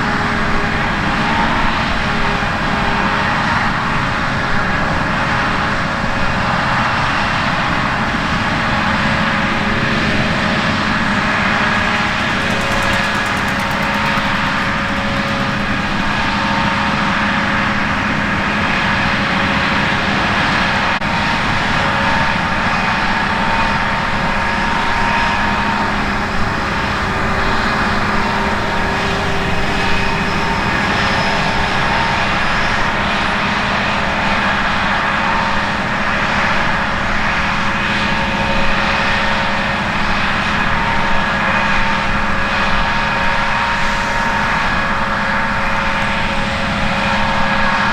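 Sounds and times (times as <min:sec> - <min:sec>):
harvest machinery engine drone: 0:00.0 - 0:47.9
machinery whining tones: 0:08.5 - 0:35.5.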